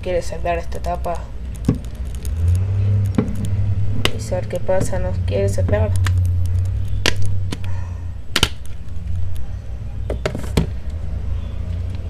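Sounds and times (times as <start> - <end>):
steady low hum: 0.0 - 11.8
plastic phone cover clicking: 8.3 - 9.0.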